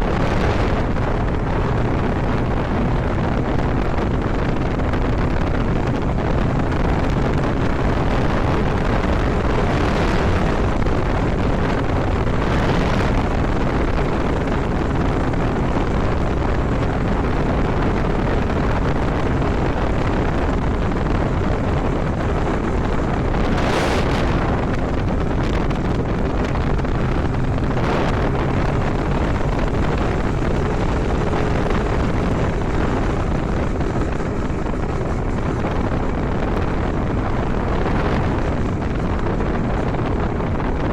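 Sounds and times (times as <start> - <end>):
wind rushing over microphone: 0.0 - 40.9
two-stroke engine running: 24.3 - 40.9.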